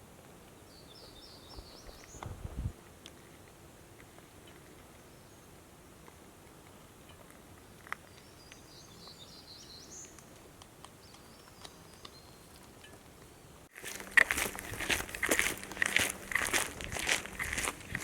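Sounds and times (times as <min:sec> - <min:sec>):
small bird singing high chirps: 0:00.7 - 0:02.5, 0:08.1 - 0:10.3.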